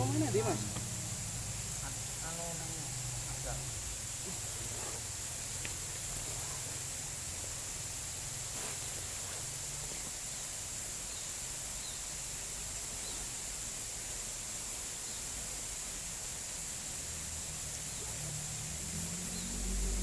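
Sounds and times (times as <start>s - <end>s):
high-pitched insect drone: 0.0s - 4.3s, 16.6s - 20.0s.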